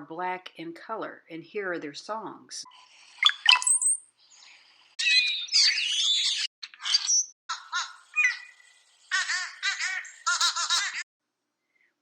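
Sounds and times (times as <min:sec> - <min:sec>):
harsh squeaky bird song: 0:02.7 - 0:11.0
bird whistle: 0:05.0 - 0:07.3.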